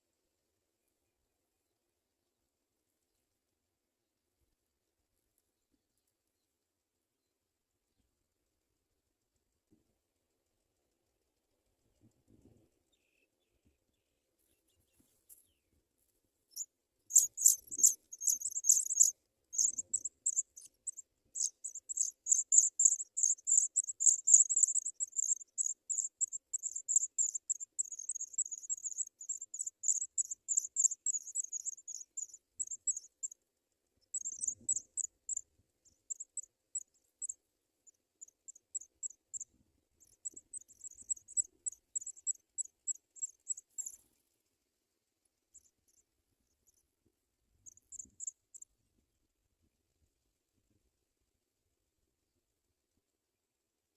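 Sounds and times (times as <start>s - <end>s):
nestlings cheeping: 16.5s - 33.4s, 34.1s - 35.4s.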